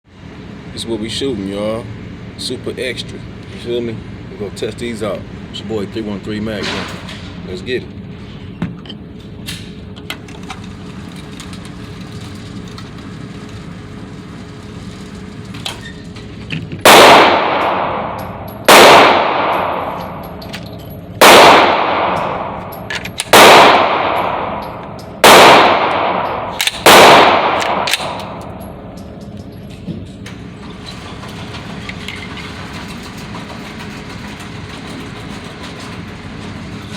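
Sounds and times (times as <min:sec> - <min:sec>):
gunshots with ringing echo: 0:16.8 - 0:20.4, 0:21.1 - 0:28.9.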